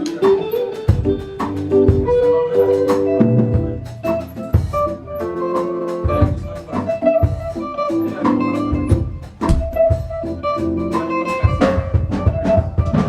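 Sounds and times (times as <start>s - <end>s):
drum kit beat: 0.0s - 13.0s
guitar or keyboard chords: 0.0s - 13.0s
electric bass: 6.1s - 12.9s.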